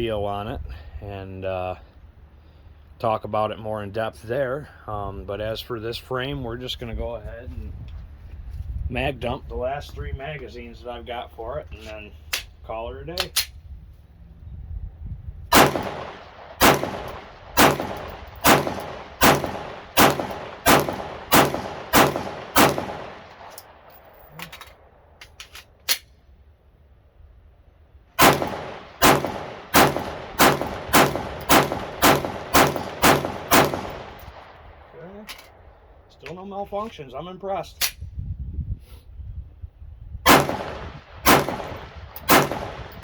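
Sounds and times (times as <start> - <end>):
pistol shots: 15.5 - 23.9, 28.2 - 34.6, 40.3 - 43.0.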